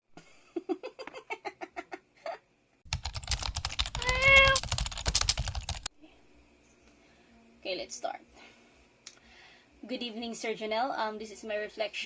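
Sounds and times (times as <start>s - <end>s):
rapid pitched clicks: 2.9s - 5.9s
cat meowing: 4.0s - 4.6s.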